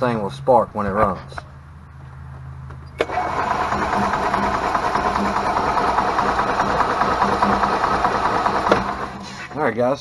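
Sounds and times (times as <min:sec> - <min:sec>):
engine cranking without starting: 0:03.0 - 0:09.6.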